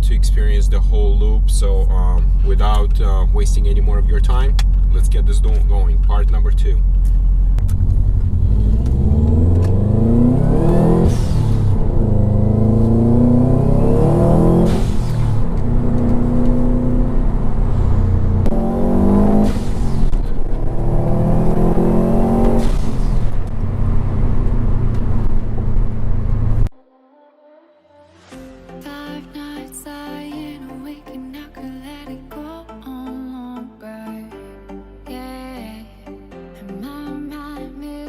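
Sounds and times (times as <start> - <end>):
car engine revving: 0.0 - 26.7.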